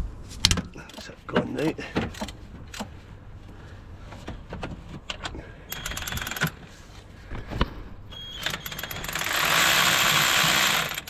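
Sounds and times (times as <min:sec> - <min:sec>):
socket ratchet clicking: 0:05.7 - 0:06.6, 0:08.2 - 0:11.0.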